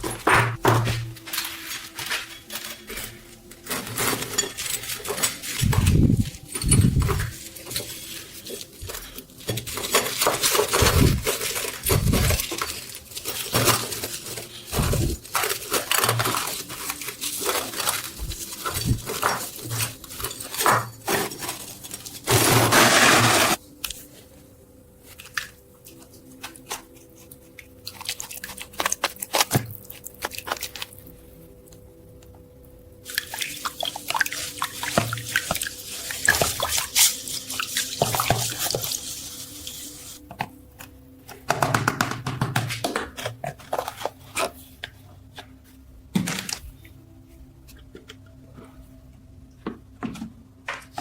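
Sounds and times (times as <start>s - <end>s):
metal parts clinking and scraping: 0.0s - 23.6s.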